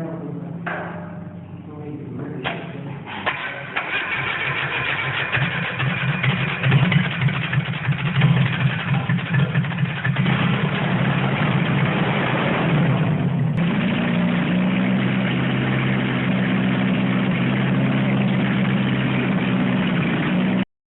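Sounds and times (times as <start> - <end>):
car engine starting and revving: 3.1 - 20.6.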